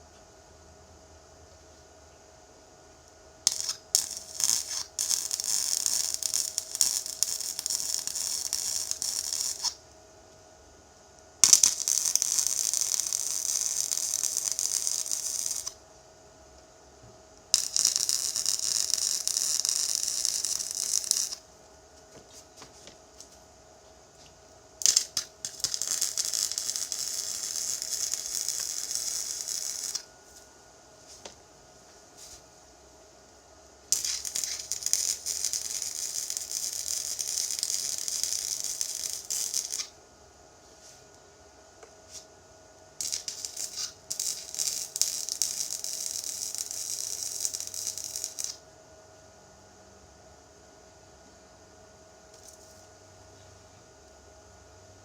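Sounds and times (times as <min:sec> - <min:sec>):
welding arc hissing and crackling: 0:03.4 - 0:09.8, 0:11.4 - 0:15.8, 0:17.5 - 0:21.5, 0:24.8 - 0:30.1, 0:33.9 - 0:40.0, 0:43.0 - 0:48.6
welding arc sputters: 0:03.5 - 0:09.8, 0:11.4 - 0:15.8, 0:17.5 - 0:21.4, 0:24.8 - 0:30.1, 0:33.9 - 0:40.0, 0:43.0 - 0:48.6.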